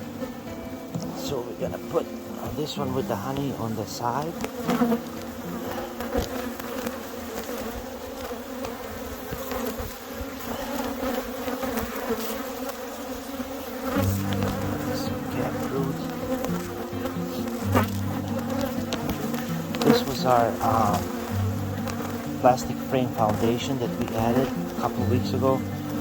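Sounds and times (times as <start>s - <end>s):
honey bees buzzing: 0.0s - 26.0s
lower louder buzz: 13.9s - 26.0s.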